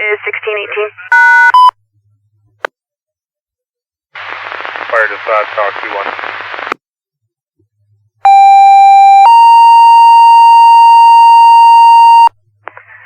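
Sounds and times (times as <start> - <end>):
two-tone pager alert over radio: 1.1 - 1.7, 8.3 - 12.3.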